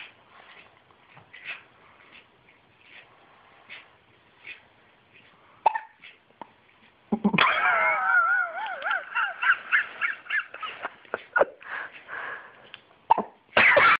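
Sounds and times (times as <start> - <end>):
hiccups: 5.6 - 6.0, 13.1 - 14.0
high wavering cry: 7.4 - 10.9.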